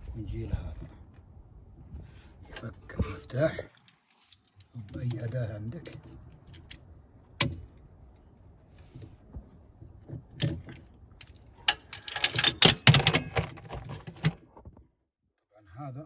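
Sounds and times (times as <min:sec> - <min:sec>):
metal tools clicking on metal: 0:10.4 - 0:13.5.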